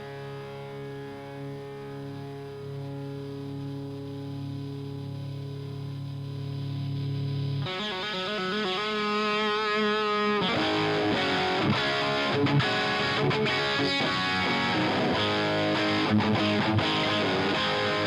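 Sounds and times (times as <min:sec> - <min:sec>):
electric guitar chords and notes: 0:00.0 - 0:18.0.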